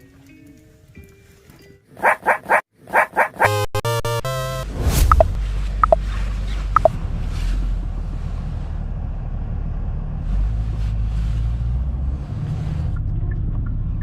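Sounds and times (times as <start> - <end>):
car engine and road noise: 1.8 - 14.0.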